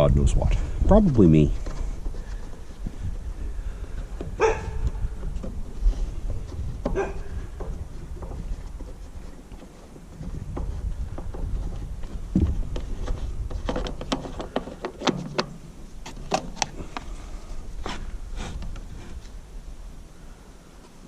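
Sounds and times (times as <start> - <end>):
dull thump: 10.2 - 15.6.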